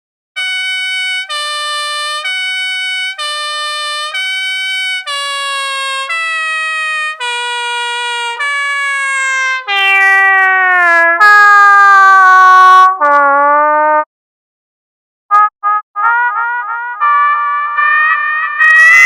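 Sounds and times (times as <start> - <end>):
two-tone ambulance siren: 0.4 - 12.1, 16.0 - 19.0.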